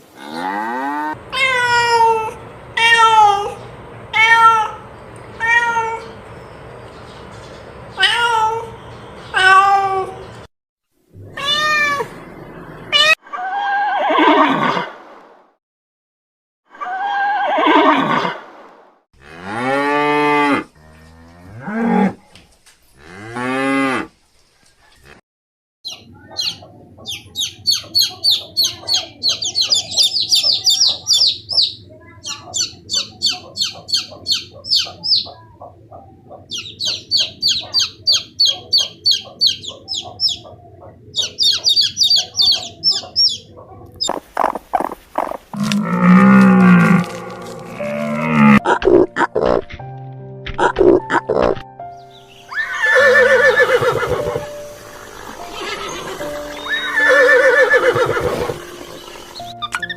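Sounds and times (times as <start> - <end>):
cow mooing: 0.2 - 1.9, 19.2 - 22.2, 45.5 - 48.7
steady low hum: 1.1 - 8.0
rapid high-pitched repeated calls: 36.5 - 40.5, 41.2 - 45.4.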